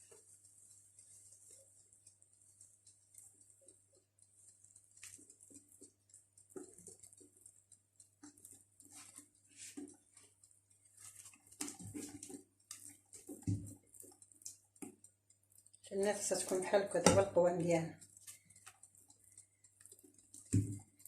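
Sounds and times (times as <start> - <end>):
utensil tapping a bowl: 16.9 - 17.7.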